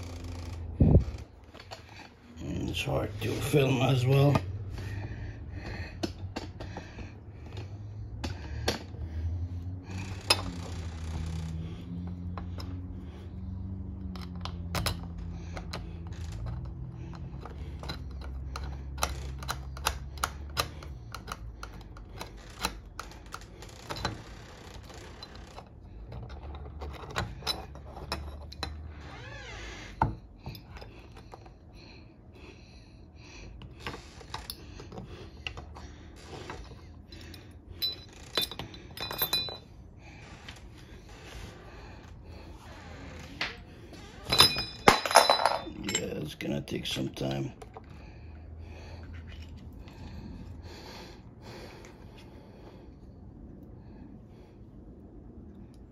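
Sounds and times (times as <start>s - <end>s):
low rumble: 0.0s - 3.2s
lock hardware clicking and clinking: 14.1s - 24.3s, 36.5s - 39.7s, 44.2s - 46.4s.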